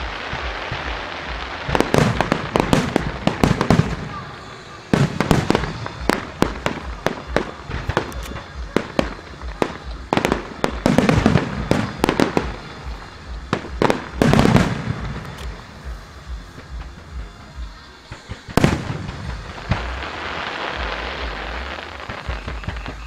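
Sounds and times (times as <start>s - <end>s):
fireworks bangs with crackling: 0.0s - 23.0s.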